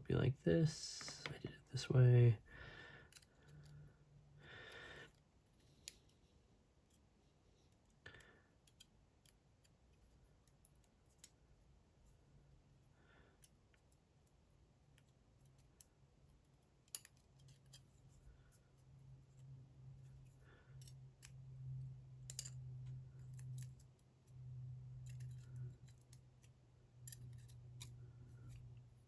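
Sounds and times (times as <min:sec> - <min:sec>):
faint low hum: 0:00.0 - 0:29.0
small clicks of lock parts: 0:03.1 - 0:03.8, 0:05.1 - 0:06.2, 0:07.7 - 0:11.5, 0:13.4 - 0:18.7, 0:20.0 - 0:28.9.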